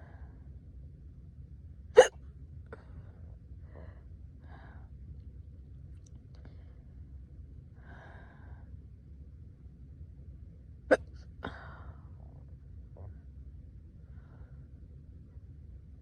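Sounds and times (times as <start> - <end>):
soft breath: 2.8 - 5.0, 7.8 - 8.8, 14.0 - 14.9.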